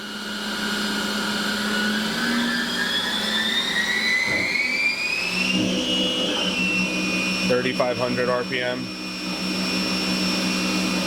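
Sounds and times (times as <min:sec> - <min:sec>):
spindle whine rising in pitch: 0:00.0 - 0:11.0
low machine hum: 0:05.5 - 0:11.0.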